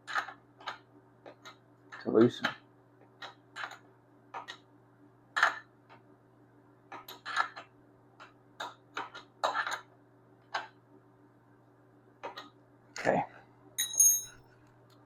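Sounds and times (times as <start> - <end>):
wrench clinking on metal nut: 13.8 - 14.4.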